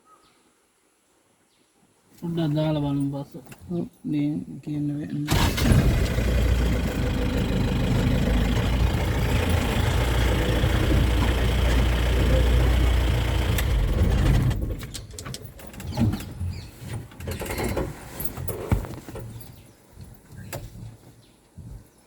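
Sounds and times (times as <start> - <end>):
vehicle engine rumbling: 5.3 - 18.0.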